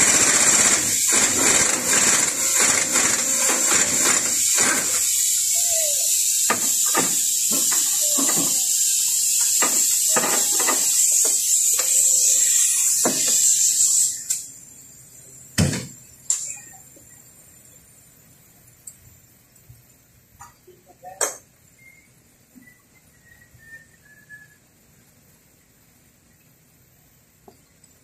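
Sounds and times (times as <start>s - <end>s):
diesel engine running rough: 0.0s - 5.6s.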